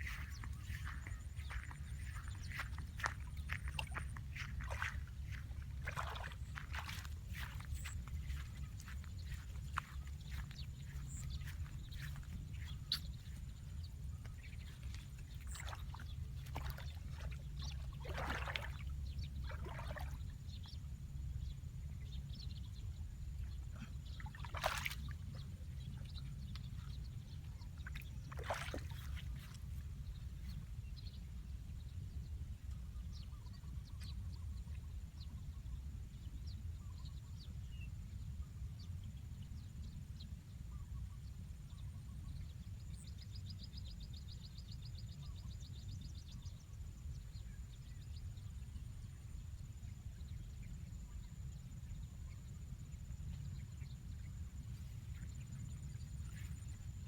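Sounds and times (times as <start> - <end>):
steady low rumble: 0.0 - 18.0
shallow water sloshing and splashing: 0.0 - 20.4, 24.2 - 25.4, 27.5 - 30.6.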